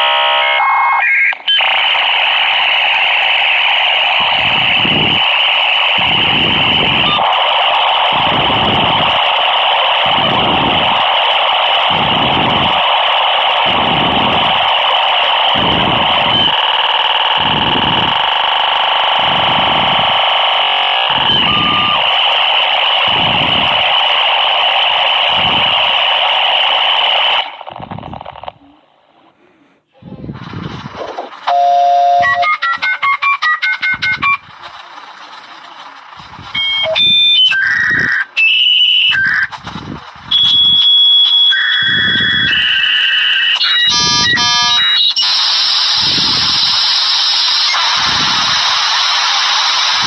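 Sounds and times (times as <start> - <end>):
modem answer tones: 31.5 - 34.4.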